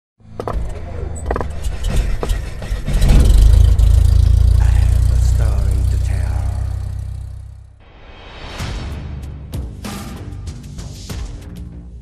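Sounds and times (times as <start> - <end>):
deep engine rumble: 0.5 - 7.8.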